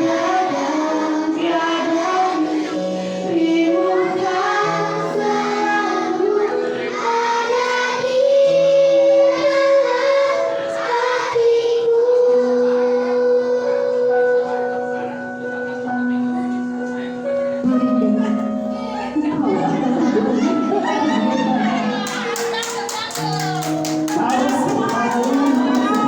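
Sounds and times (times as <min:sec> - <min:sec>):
children singing: 0:00.0 - 0:14.7
held-note music backing: 0:00.0 - 0:26.0.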